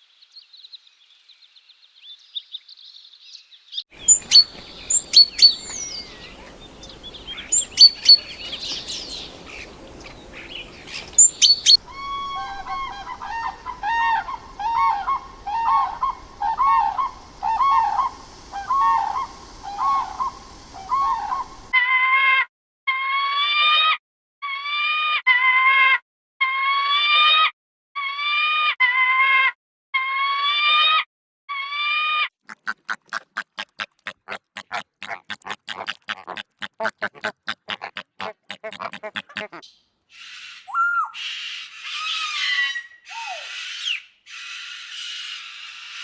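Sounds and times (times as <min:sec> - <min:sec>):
farm animal calls: 0:04.0 - 0:21.7, 0:32.5 - 0:44.0
harsh sliding animal calls: 0:04.0 - 0:21.7, 0:32.5 - 0:46.0
rapid short animal call pulses: 0:04.0 - 0:21.7, 0:32.5 - 0:46.0.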